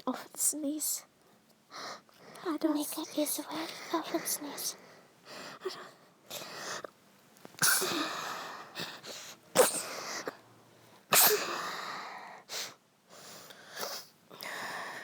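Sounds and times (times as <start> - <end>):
woman sneezing: 7.6 - 8.3, 11.1 - 11.8.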